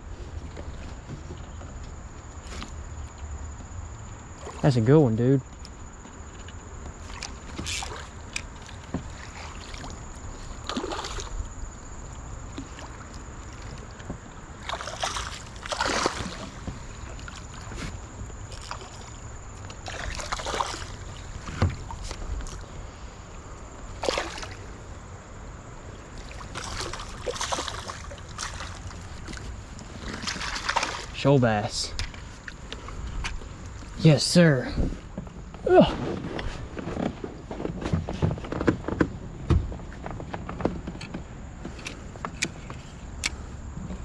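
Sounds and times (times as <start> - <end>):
low wind rumble: 0.0 - 44.0
water splashing and sloshing: 0.0 - 44.0.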